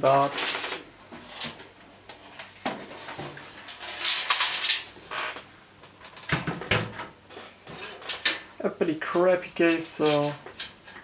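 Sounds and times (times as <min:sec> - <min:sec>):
metal clicks and rattles: 0:03.6 - 0:04.9.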